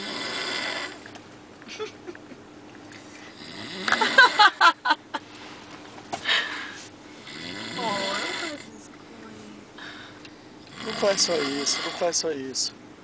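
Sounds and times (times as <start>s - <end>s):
person snoring: 0.0s - 1.0s, 3.4s - 4.4s, 7.2s - 8.7s, 10.7s - 12.0s.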